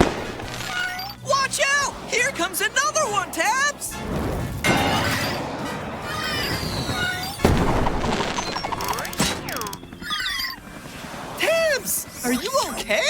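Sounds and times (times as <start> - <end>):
whistling rockets: 0.0 - 3.2, 3.8 - 11.8
firework bursts: 0.0 - 9.7.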